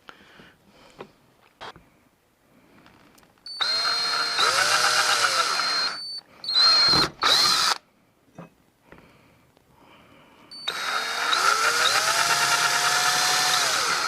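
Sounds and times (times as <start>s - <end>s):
cordless drill whining: 3.5s - 7.8s, 10.6s - 14.0s.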